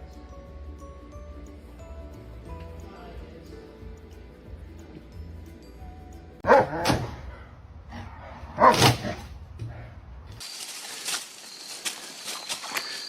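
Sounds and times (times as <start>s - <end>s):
dog barking: 6.4s - 7.1s, 8.5s - 9.2s.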